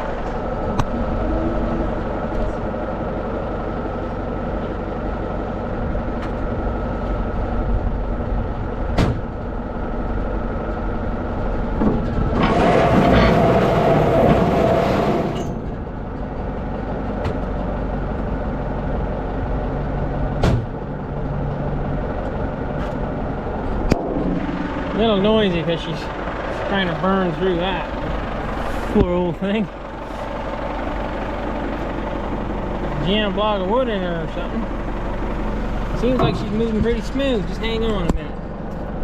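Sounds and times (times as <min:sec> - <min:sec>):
tractor engine running: 0:00.0 - 0:39.0
harsh noise with steady whine: 0:20.3 - 0:29.6
sharp knocks: 0:23.9 - 0:25.2.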